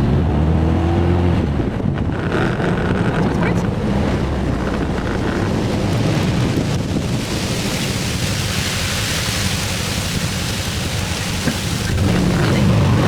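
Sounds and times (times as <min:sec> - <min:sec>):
wind and road rush: 0:00.0 - 0:13.0
car engine running: 0:01.4 - 0:07.9, 0:11.1 - 0:13.0.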